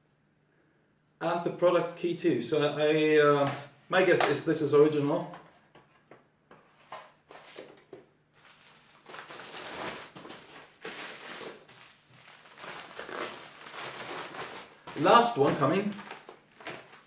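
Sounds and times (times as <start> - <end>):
packaging crinkling and rustling: 6.8 - 17.0.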